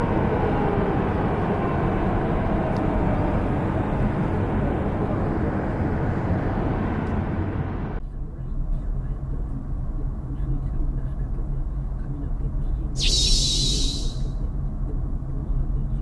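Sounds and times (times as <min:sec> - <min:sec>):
car road noise from inside: 0:00.0 - 0:12.8.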